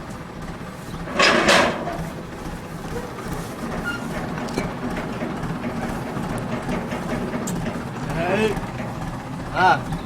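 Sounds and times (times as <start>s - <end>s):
vehicle engine rumbling: 0.0s - 10.0s
rattling: 1.1s - 2.1s, 3.6s - 9.3s.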